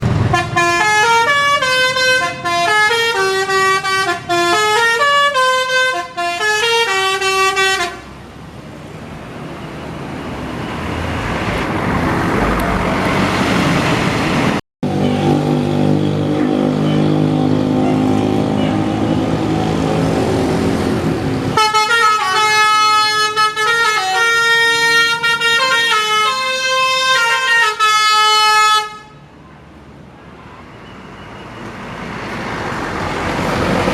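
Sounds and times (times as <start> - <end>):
multi-tone bus horns melody: 0.0 - 8.1, 14.8 - 29.3
bus engine running: 0.0 - 28.5, 31.6 - 33.9
bus driving by: 0.0 - 33.9.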